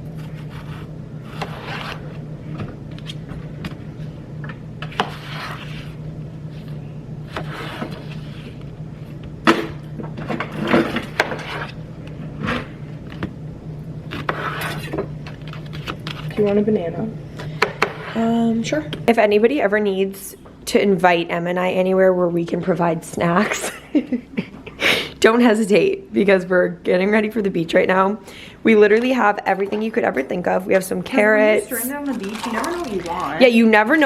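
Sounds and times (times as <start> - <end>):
steady low hum: 0.0 - 34.0
objects scraping and knocking: 9.5 - 12.7.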